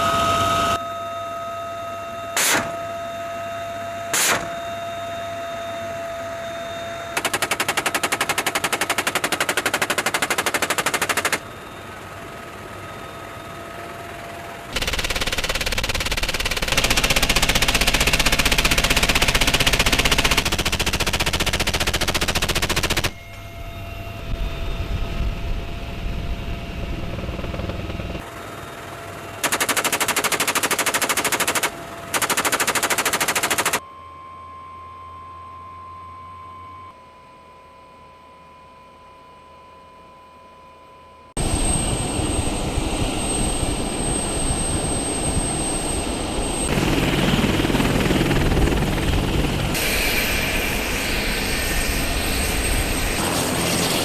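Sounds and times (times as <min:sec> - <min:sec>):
faint whine: 0:00.0 - 0:08.7, 0:11.1 - 0:29.3
rotary machine gun firing: 0:02.4 - 0:02.7, 0:04.2 - 0:04.6, 0:07.1 - 0:11.5, 0:14.7 - 0:23.2, 0:29.4 - 0:33.8.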